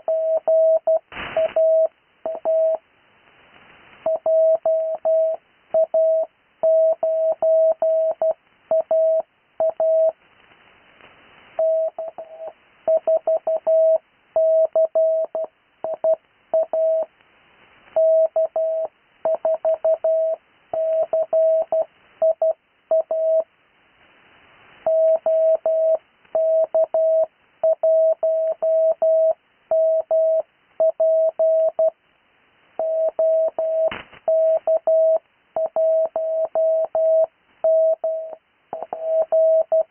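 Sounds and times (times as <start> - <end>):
morse code tones: 0.0 - 2.8, 11.6 - 17.1, 18.0 - 23.4, 24.9 - 32.0, 32.8 - 39.9
faint hiss: 0.0 - 6.9, 7.5 - 13.0, 13.7 - 39.5
sharp click: 33.9 - 34.3.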